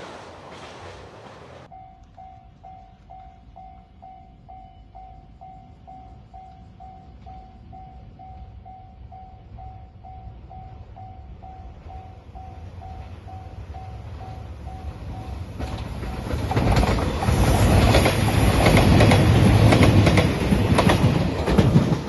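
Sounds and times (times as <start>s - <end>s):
level-crossing warning bell ringing: 1.6s - 16.7s.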